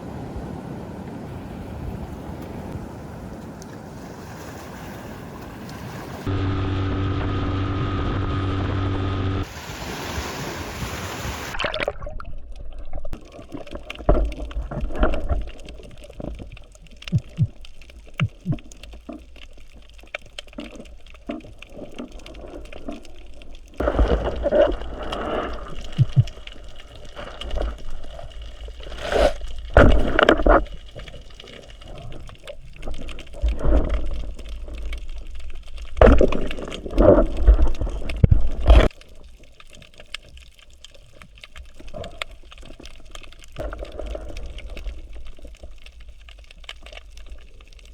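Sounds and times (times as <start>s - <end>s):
water gurgling and sloshing: 1.3s - 47.9s
steady hum: 6.3s - 9.5s.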